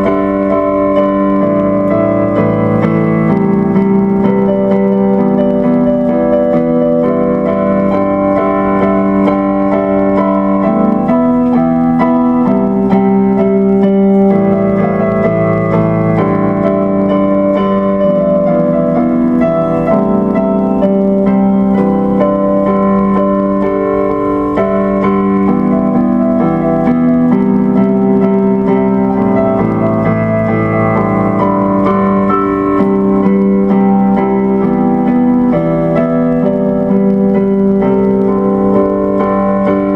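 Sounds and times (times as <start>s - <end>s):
electric piano sustained chords: 0.0s - 39.9s.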